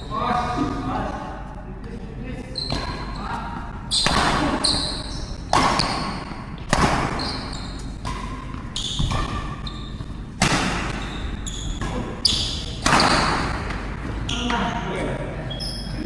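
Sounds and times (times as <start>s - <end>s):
shoe squeaks on court floor: 2.5s - 3.2s, 3.9s - 6.2s, 7.1s - 10.2s, 10.9s - 13.3s
racket striking shuttlecock: 3.9s - 14.0s.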